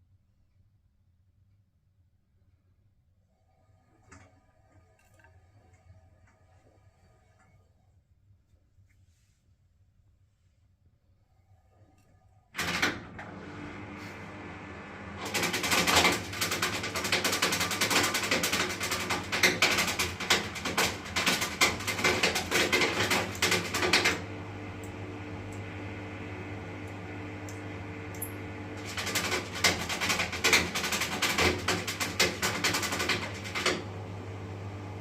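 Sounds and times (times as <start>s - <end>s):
washing machine humming: 12.5s - 35.0s.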